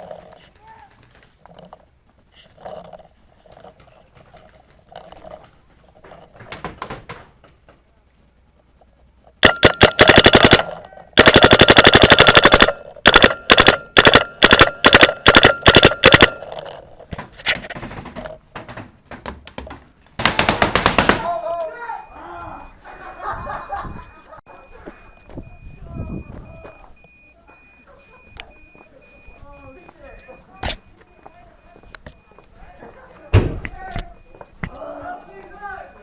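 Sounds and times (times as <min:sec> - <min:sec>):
paintball marker firing: 0:09.4 - 0:16.4.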